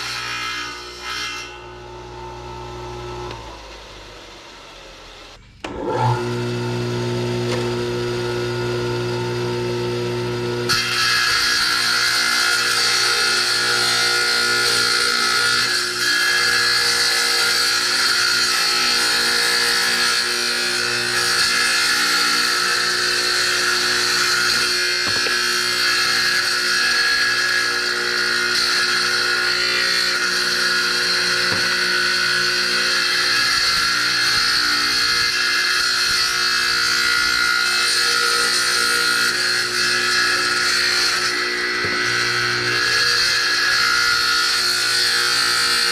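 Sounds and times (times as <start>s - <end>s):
power saw cutting stone tile: 0.0s - 45.9s.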